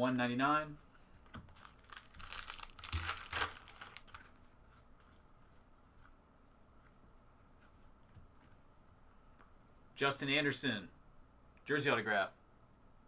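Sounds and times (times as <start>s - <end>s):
wrapper crinkling: 1.5s - 4.4s.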